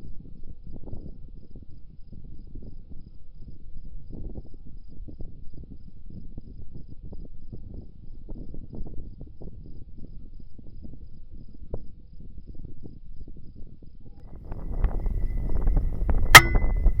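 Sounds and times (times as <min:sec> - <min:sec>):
low crackling rumble: 0:14.4 - 0:17.0.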